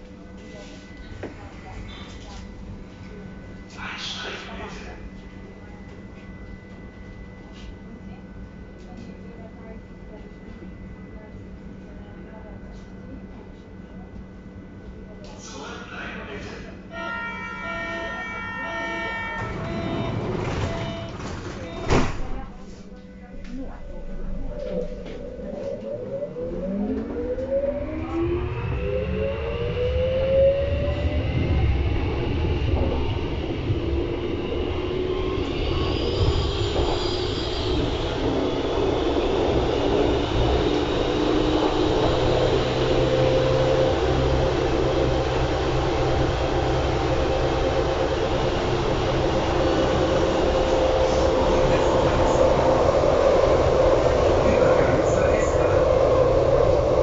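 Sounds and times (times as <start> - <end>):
low hum: 19.4 - 57.0
traction motors whining: 24.2 - 57.0
wheels on rail running noise: 26.6 - 57.0.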